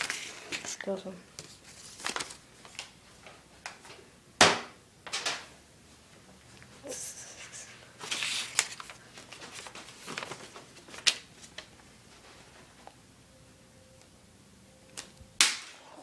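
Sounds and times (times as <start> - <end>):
paper rustling: 0.0 - 3.0, 8.0 - 12.7.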